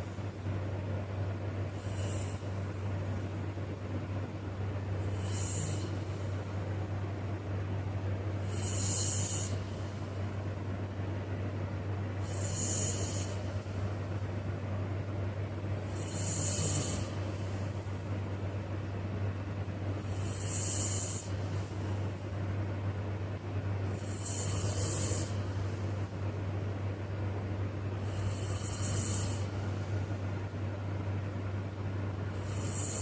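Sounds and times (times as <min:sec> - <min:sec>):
person snoring: 0:05.0 - 0:06.0, 0:08.4 - 0:09.7, 0:12.2 - 0:13.6, 0:15.9 - 0:17.6, 0:20.0 - 0:21.4, 0:23.9 - 0:25.5, 0:28.0 - 0:29.6, 0:32.3 - 0:33.0.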